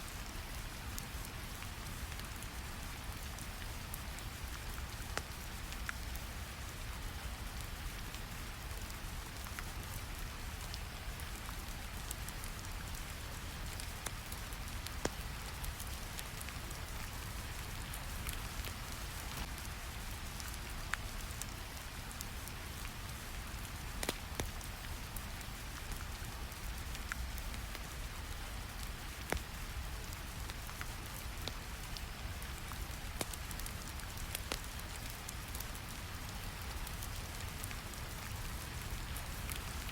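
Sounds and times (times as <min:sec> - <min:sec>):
steady rain: 0:00.0 - 0:39.9
fire crackling pops: 0:13.4 - 0:20.6, 0:23.7 - 0:26.2, 0:26.8 - 0:39.8.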